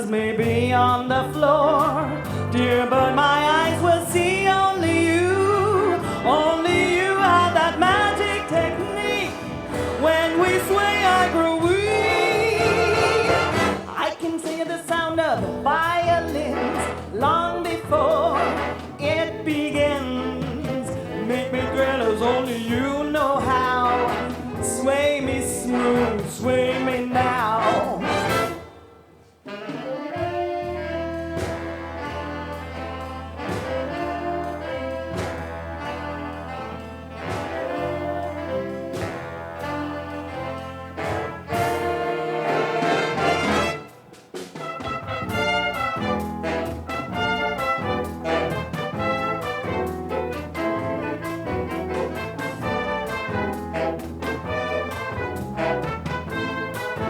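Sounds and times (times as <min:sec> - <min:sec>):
big band playing: 0:00.0 - 0:57.0.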